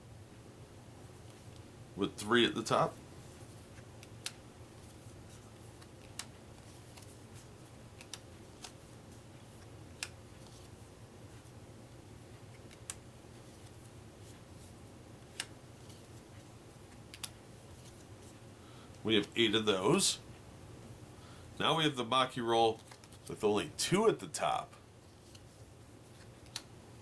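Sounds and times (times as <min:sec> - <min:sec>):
low room hum: 0:00.0 - 0:27.0
playing cards snapping: 0:05.8 - 0:07.1.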